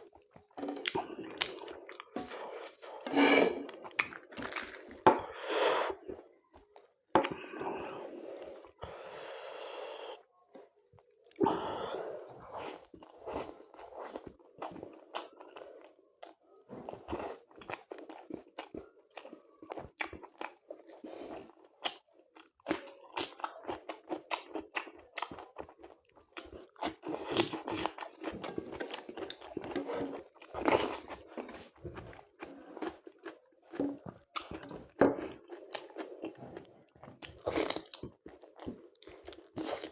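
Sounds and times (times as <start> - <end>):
crunchy chewing: 12.4 - 39.9.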